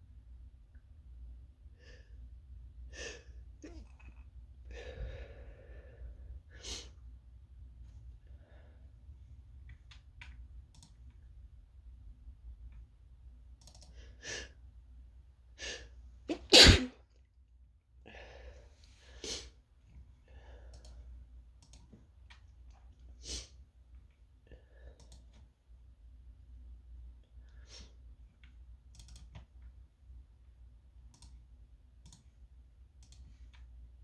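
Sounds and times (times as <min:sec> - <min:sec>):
person sneezing: 0:03.6 - 0:04.2, 0:15.6 - 0:17.0.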